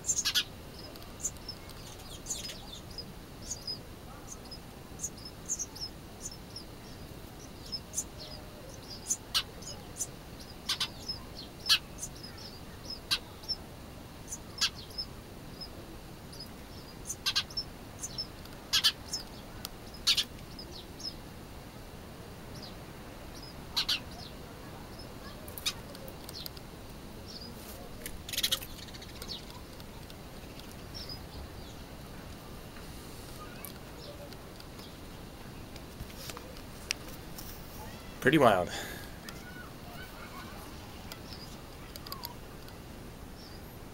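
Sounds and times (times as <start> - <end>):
chicks calling: 0.0 - 21.2, 22.4 - 26.6, 28.3 - 31.9
small birds chirping: 0.0 - 43.9.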